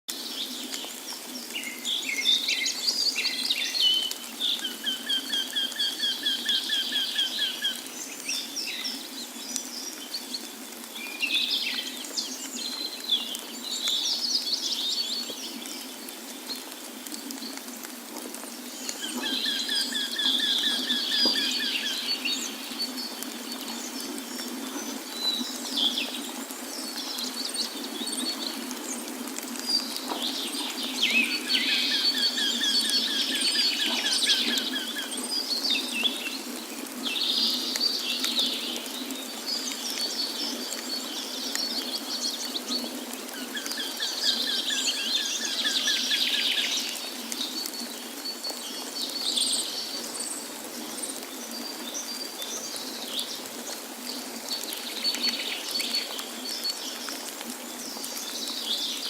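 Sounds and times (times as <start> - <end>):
falling water rushing: 0.1 - 59.0
birds singing and chirping: 18.8 - 29.0, 29.6 - 53.4.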